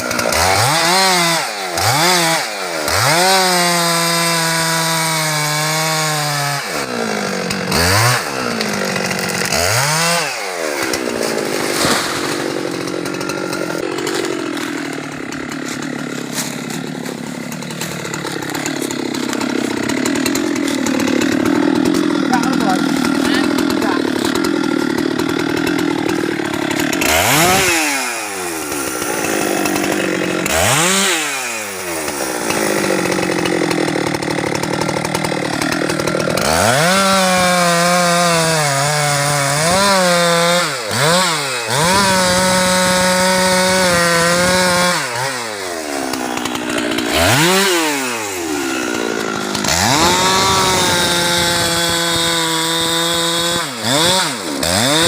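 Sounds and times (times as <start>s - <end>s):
chainsaw revving and cutting wood: 0.0s - 55.0s.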